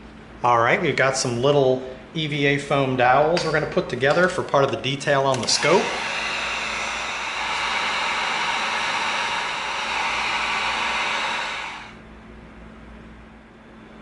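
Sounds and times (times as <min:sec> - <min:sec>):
air blower running: 0:05.1 - 0:12.1.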